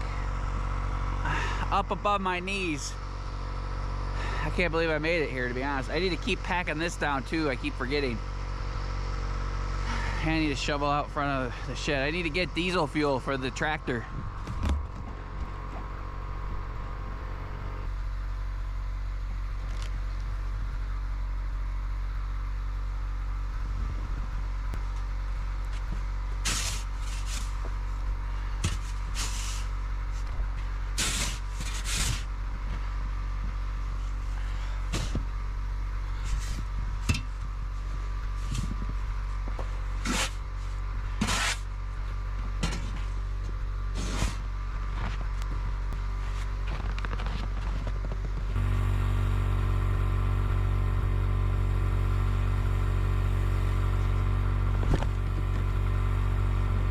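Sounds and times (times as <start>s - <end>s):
motor running: 0.0s - 18.7s, 23.5s - 56.9s.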